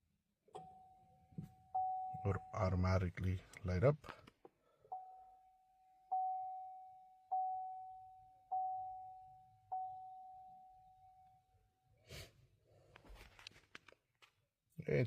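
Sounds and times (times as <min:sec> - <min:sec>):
car warning chime dinging: 0:00.5 - 0:03.4, 0:04.9 - 0:11.9.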